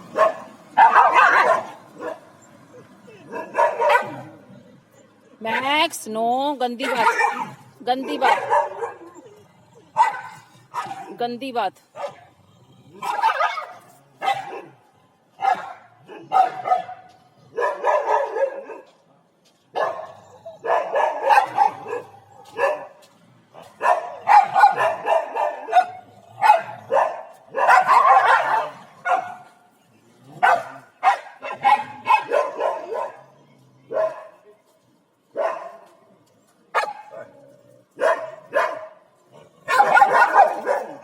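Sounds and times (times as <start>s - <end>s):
dog barking: 0.1s - 2.3s, 3.2s - 4.3s, 6.8s - 9.2s, 9.9s - 11.2s, 11.9s - 12.3s, 13.0s - 14.8s, 15.4s - 18.9s, 19.7s - 23.0s, 23.6s - 29.5s, 30.4s - 33.2s, 33.9s - 34.5s, 35.3s - 35.9s, 36.7s - 37.4s, 38.0s - 39.0s, 39.6s - 41.0s.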